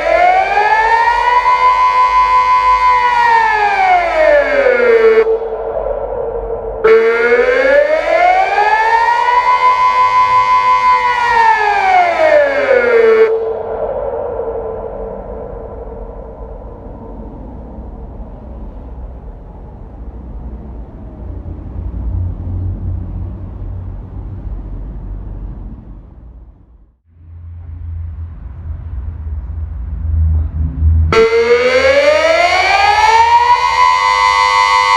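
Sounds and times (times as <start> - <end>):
siren rising and falling wail: 0.0 - 19.0, 30.1 - 34.9
low outdoor rumble: 13.3 - 32.0.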